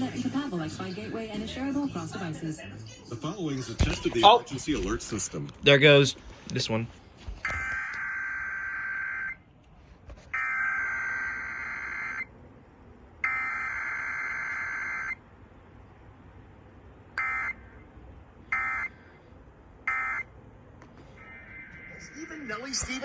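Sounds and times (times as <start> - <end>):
screechy digital data tones: 21.2 - 23.0.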